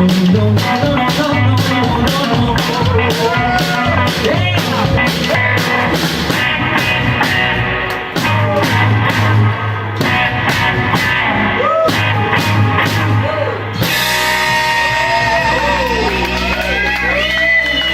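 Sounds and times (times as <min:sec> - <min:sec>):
drum kit: 0:00.0 - 0:17.9
guitar: 0:00.0 - 0:17.9
rockabilly band playing: 0:00.0 - 0:17.9.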